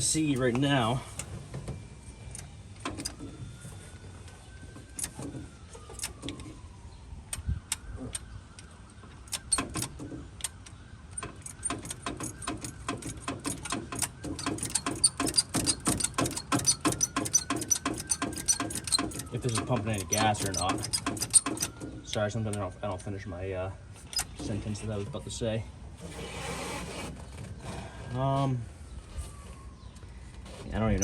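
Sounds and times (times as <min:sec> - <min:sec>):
throttle linkage clicking and rattling: 0:11.2 - 0:21.9.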